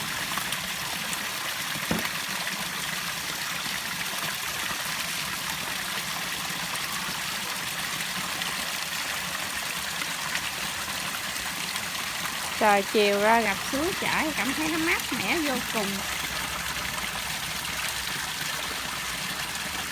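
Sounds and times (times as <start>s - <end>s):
water splashing over rocks: 0.0s - 19.9s
sharp knock: 1.9s - 2.1s.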